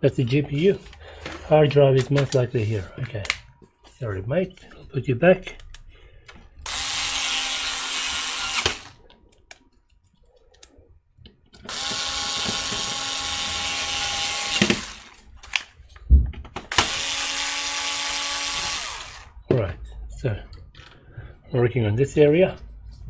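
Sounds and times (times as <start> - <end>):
electric screwdriver running: 6.6 - 9.0, 11.7 - 15.7, 16.7 - 19.4.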